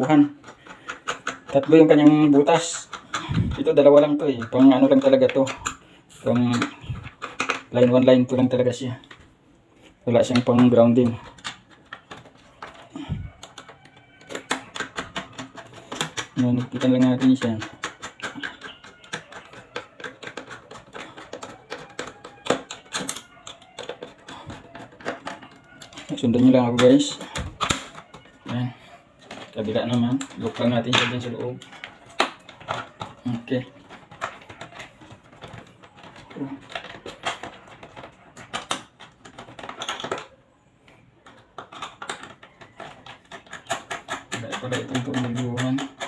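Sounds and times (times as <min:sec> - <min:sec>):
clicking and tapping of tools: 0:10.2 - 0:46.0.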